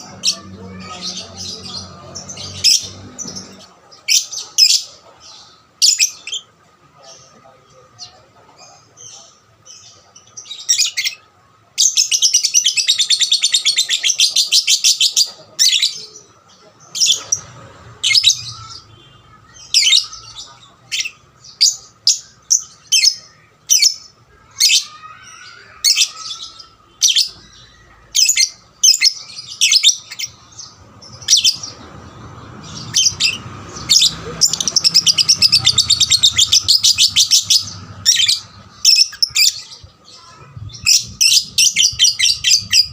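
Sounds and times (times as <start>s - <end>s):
lovebird chirping: 11.9s - 42.9s.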